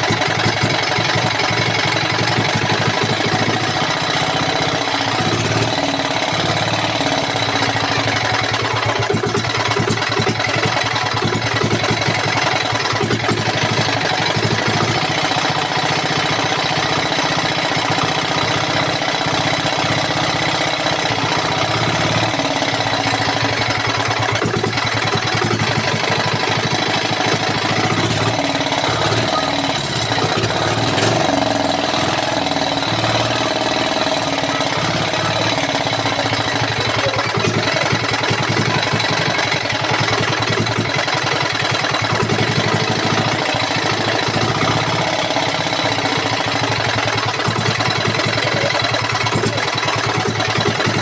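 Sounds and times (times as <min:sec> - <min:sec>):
engine idling: 0:00.0 - 0:51.0.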